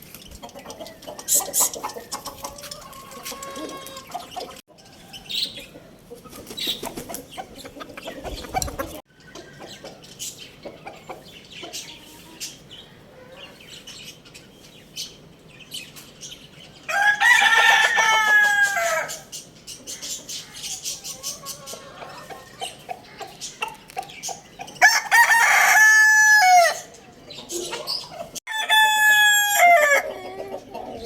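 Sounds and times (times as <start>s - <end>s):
small birds chirping: 0.0s - 16.9s, 19.1s - 24.9s, 26.8s - 28.4s
chickens clucking: 0.0s - 17.0s, 17.6s - 31.0s
rooster crowing: 16.9s - 19.2s, 24.8s - 26.9s, 28.5s - 30.4s.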